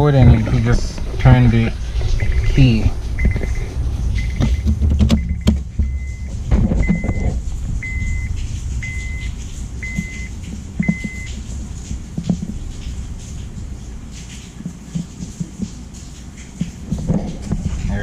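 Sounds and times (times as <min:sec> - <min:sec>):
dashboard chime beeping: 0:02.2 - 0:11.3.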